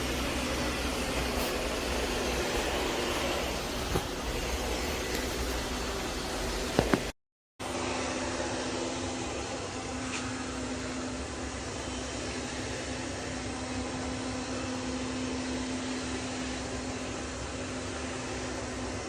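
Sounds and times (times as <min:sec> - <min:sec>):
constant low hum: 0:00.0 - 0:07.1.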